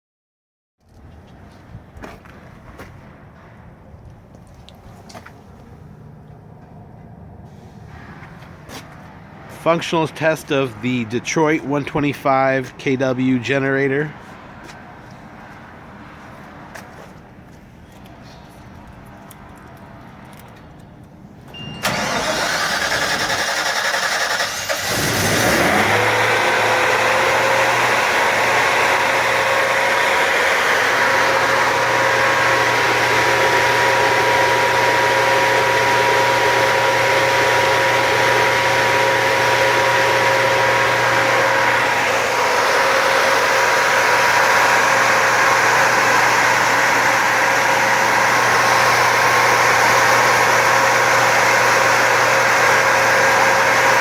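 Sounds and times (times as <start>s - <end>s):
generator engine humming: 3.6s - 16.6s, 20.8s - 54.0s
engine starter cranking: 21.7s - 26.4s.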